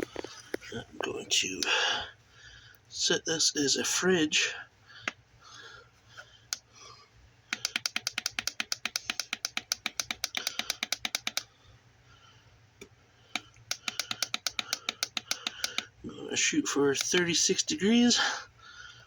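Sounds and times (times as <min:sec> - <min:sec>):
rapid evenly spaced ticks: 0:07.5 - 0:11.5, 0:13.3 - 0:16.0, 0:17.0 - 0:17.6
button clicks: 0:07.6 - 0:11.4, 0:13.4 - 0:15.9.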